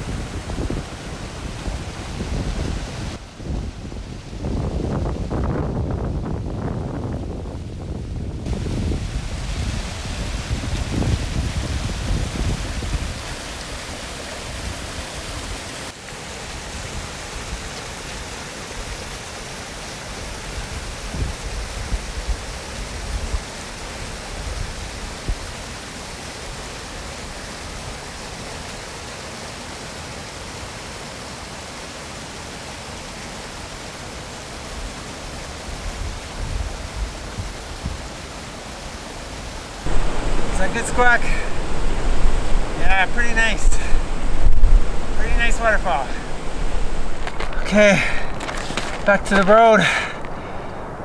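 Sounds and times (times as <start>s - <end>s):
wind buffeting microphone: 0.0s - 15.7s, 20.2s - 25.6s, 35.7s - 38.1s, 39.9s - 51.0s
waterfall rushing: 8.5s - 20.9s, 23.4s - 51.0s.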